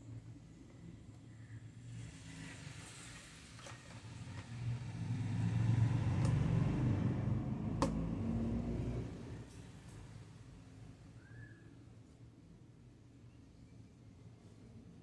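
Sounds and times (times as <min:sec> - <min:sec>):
laptop panel clicks and taps: 0:07.8 - 0:08.0.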